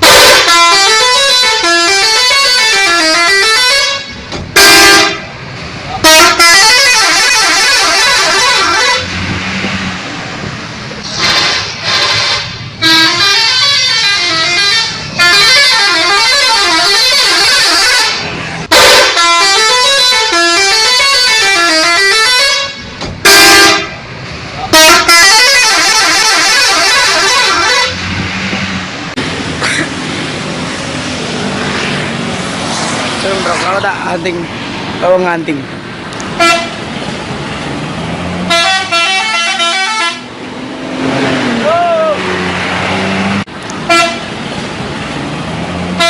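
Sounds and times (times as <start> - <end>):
short horn blasts: 0.0 - 5.3, 6.0 - 9.2, 11.1 - 24.0, 24.7 - 28.1, 36.4 - 36.8, 38.5 - 40.3, 43.9 - 44.2
musical bus air horns: 0.0 - 9.3, 11.0 - 24.0, 24.6 - 28.2, 36.3 - 36.8, 38.4 - 40.4, 43.8 - 44.4
street noise: 0.0 - 46.0.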